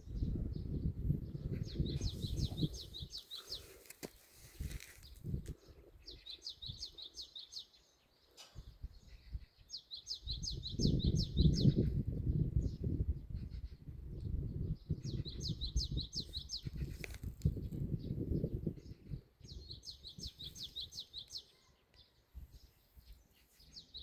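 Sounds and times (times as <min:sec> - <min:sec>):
wind rumble on microphone: 0:00.0 - 0:03.6, 0:04.4 - 0:07.0, 0:08.6 - 0:21.0.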